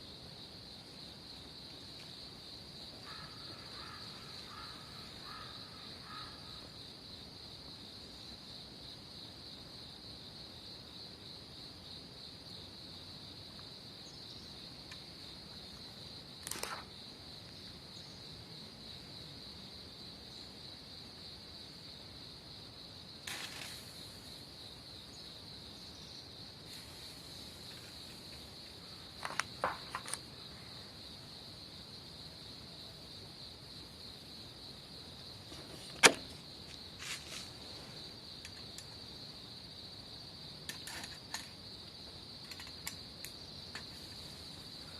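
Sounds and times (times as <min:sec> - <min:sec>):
insects trilling: 0:00.0 - 0:44.9
brief knocks and clatters: 0:29.2 - 0:30.2, 0:35.5 - 0:36.4.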